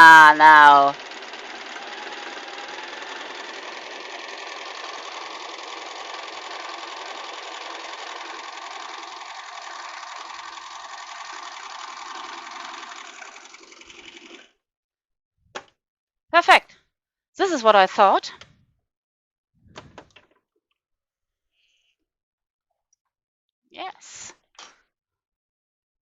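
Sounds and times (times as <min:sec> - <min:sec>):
sewing machine running: 0:00.0 - 0:14.5.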